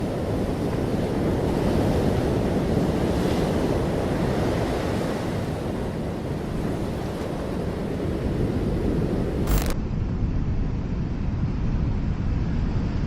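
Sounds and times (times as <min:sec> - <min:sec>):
ocean surf rumbling: 0:00.0 - 0:09.8.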